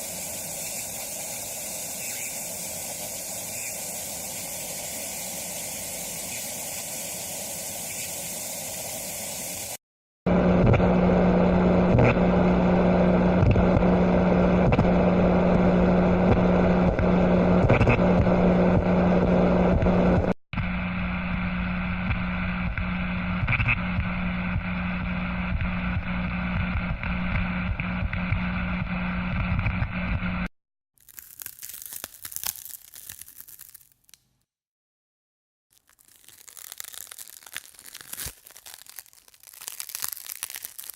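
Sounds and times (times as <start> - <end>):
steady hiss with low hum: 0.0 - 9.7
crisp crackling and crinkling: 31.0 - 34.4, 35.7 - 40.9.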